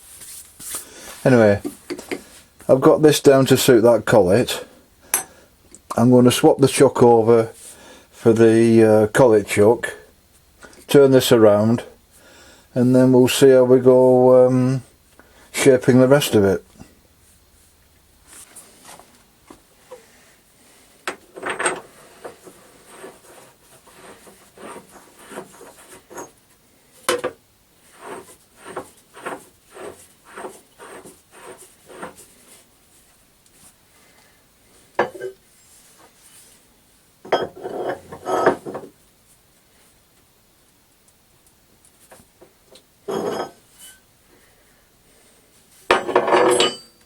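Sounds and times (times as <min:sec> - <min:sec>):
metal clinks and knocks: 0:45.9 - 0:47.0.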